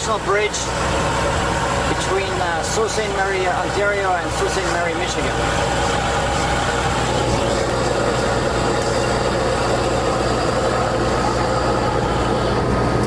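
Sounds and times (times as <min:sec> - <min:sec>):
diesel truck engine exhaust: 0:00.0 - 0:13.0.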